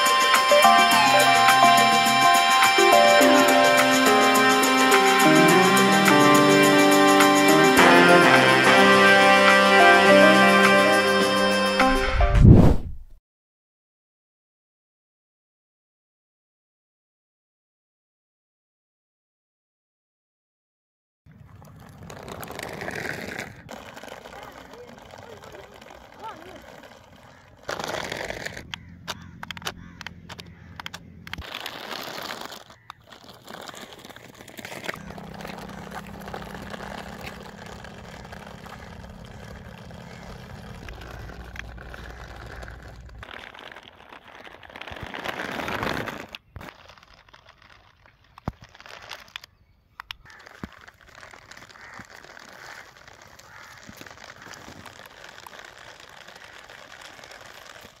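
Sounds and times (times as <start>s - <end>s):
crackling handling noise: 21.4s - 58.0s
small motor humming: 34.8s - 43.2s.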